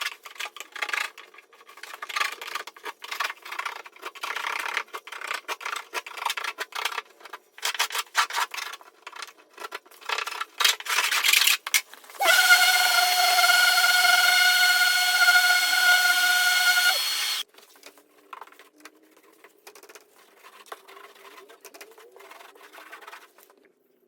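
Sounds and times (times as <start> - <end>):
hand tool scraping plaster: 0.6 - 17.4
power tool whining: 12.2 - 17.4.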